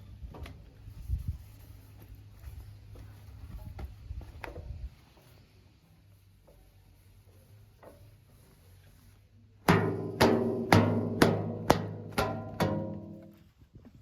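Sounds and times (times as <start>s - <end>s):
loud pitched drum hits: 9.7s - 13.2s.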